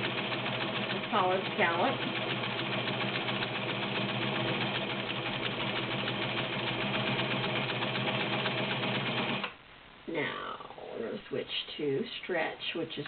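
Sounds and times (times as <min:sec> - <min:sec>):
sewing machine motor hum: 0:00.0 - 0:09.5
sewing needle ticking: 0:00.0 - 0:09.6.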